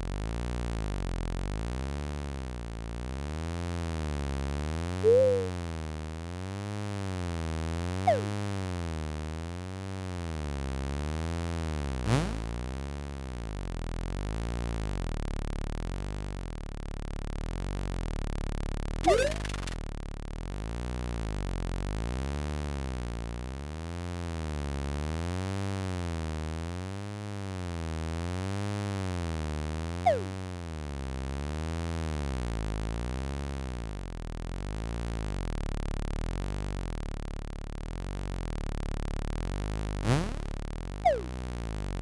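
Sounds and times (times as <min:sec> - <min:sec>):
quick pitch-sweep sound effects: 0:05.0 - 0:05.6, 0:08.0 - 0:08.5, 0:19.0 - 0:19.8, 0:30.0 - 0:30.4, 0:40.0 - 0:41.5
synthesizer drone with wavering pitch: 0:05.0 - 0:05.6, 0:08.0 - 0:08.5, 0:19.0 - 0:19.8, 0:30.0 - 0:30.5, 0:40.0 - 0:41.5.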